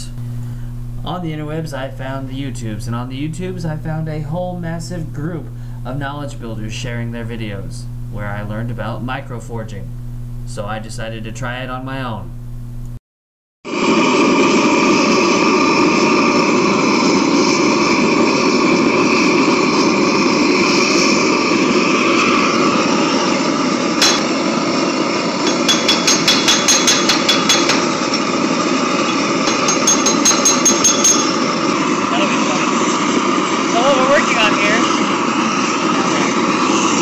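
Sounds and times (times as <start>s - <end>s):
steady rushing noise: 13.7s - 37.0s
hammer striking metal: 24.0s - 24.5s, 25.4s - 28.4s, 29.0s - 31.6s.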